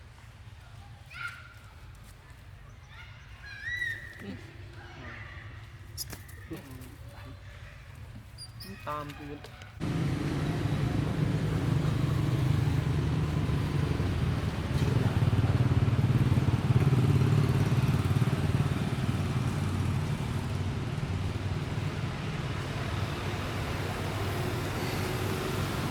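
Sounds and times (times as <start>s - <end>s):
engine running with low rumble: 9.8s - 25.9s.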